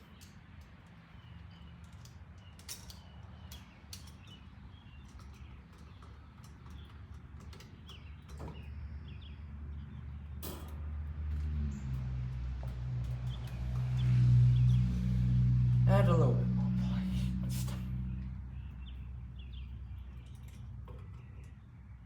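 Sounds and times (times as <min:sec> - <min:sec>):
low rumble: 0:10.7 - 0:20.6.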